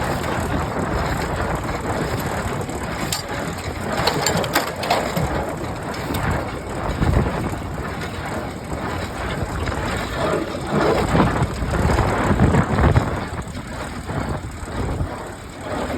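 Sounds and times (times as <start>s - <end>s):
baler mechanism clattering: 0.1s - 15.9s.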